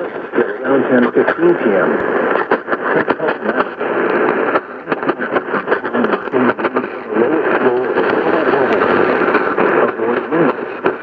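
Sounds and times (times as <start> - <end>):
radio static hiss and crackles: 0.0 - 11.0
person speaking over radio: 7.1 - 10.0.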